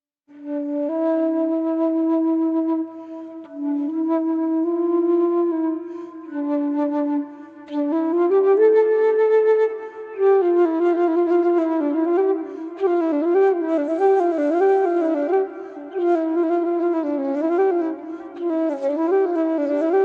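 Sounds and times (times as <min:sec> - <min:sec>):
flute playing slow melody: 0:00.3 - 0:20.0.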